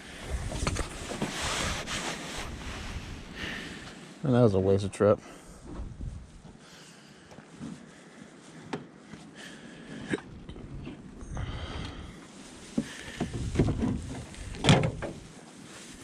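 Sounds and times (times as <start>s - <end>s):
knocks and thumps: 12.8s - 15.2s.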